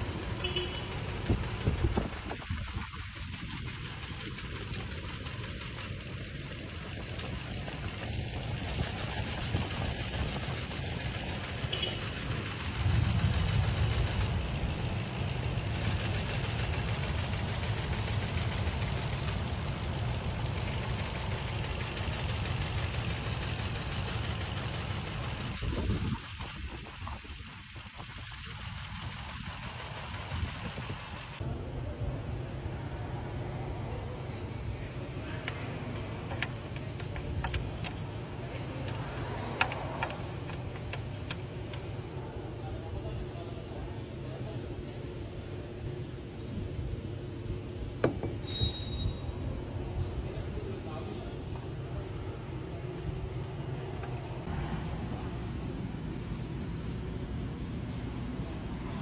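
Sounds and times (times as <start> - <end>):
engine ticks and clicks: 0.0 - 31.4, 35.2 - 42.2
intake rushing noise: 0.0 - 31.5
car engine idling: 0.0 - 48.5.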